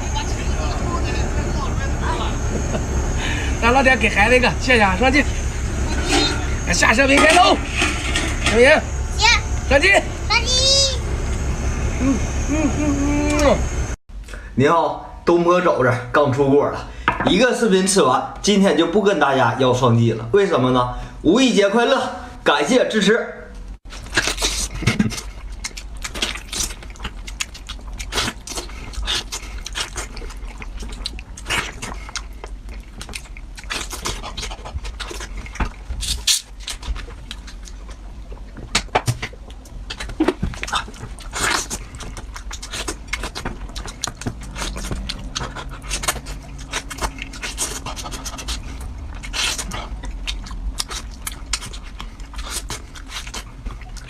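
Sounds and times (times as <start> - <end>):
wet chewing and lip-smacking: 23.9 - 54.0.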